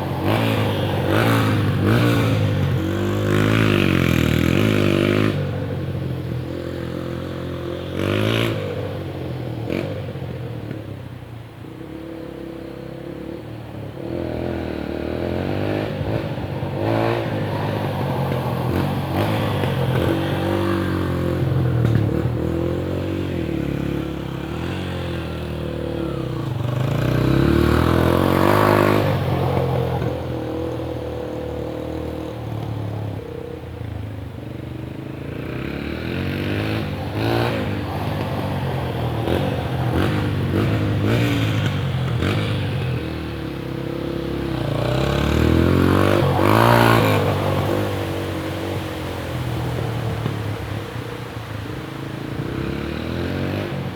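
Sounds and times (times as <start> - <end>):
dirt bike engine revving: 0.0 - 5.4, 35.3 - 50.2.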